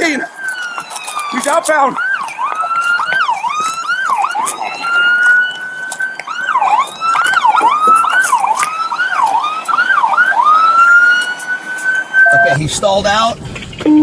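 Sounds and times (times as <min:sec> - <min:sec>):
police siren wailing and yelping: 0:00.0 - 0:13.2.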